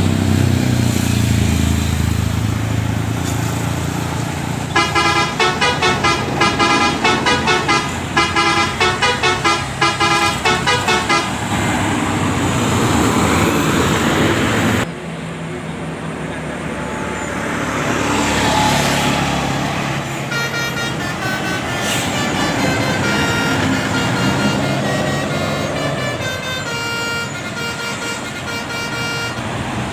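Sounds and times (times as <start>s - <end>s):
engine and traffic noise: 0.0s - 29.9s
bus air horn melody: 4.7s - 11.8s, 19.9s - 29.8s.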